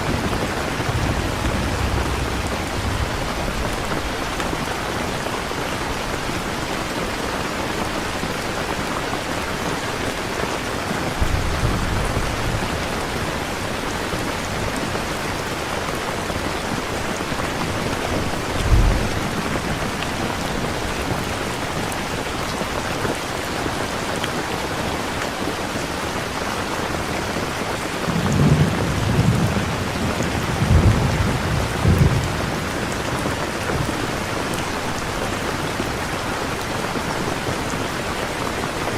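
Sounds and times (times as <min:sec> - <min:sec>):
thunder rolling: 0:00.0 - 0:06.3, 0:11.0 - 0:15.3, 0:17.7 - 0:20.2, 0:28.1 - 0:34.3
heavy rain hissing: 0:00.0 - 0:38.9.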